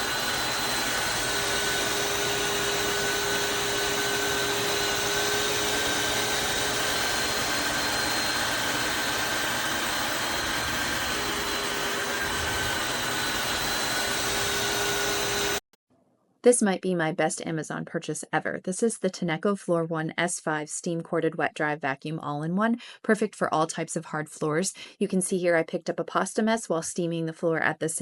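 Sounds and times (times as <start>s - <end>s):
steam mop motor whine: 0.0s - 15.6s.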